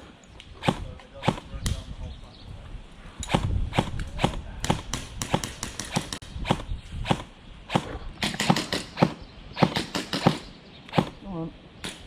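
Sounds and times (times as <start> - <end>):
airsoft gun shots: 3.3 - 11.2.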